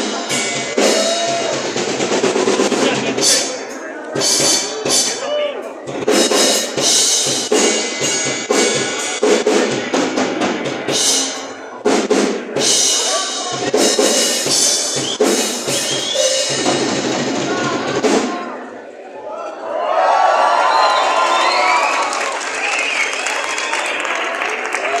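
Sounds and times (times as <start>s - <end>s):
drum hits: 5.9s - 18.5s.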